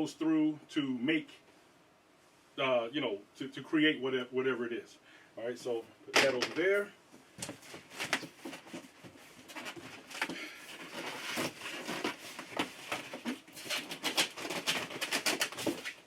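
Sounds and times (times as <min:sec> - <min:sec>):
cardboard box rustling: 0:07.4 - 0:16.0.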